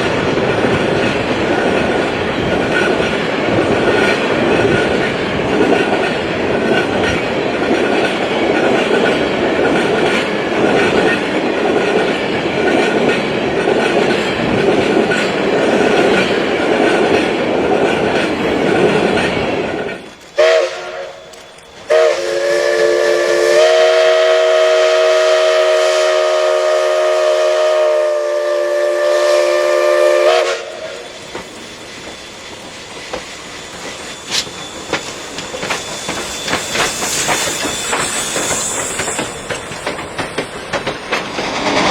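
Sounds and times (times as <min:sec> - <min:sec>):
train rumble and clatter: 0:00.0 - 0:41.9
train horn blasts: 0:20.4 - 0:31.2.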